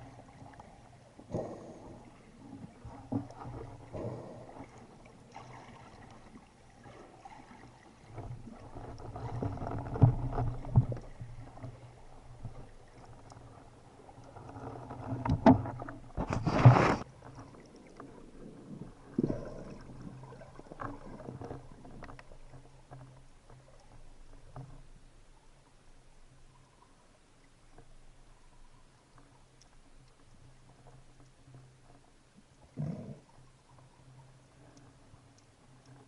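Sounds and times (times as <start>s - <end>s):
water sloshing: 0.0s - 24.9s
muffled knocks underwater: 9.1s - 11.7s.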